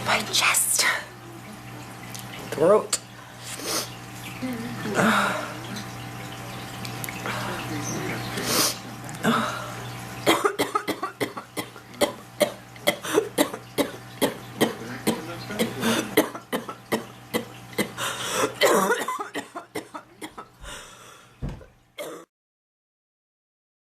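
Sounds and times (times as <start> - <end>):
woman coughing: 10.3 - 20.5, 22.0 - 22.3.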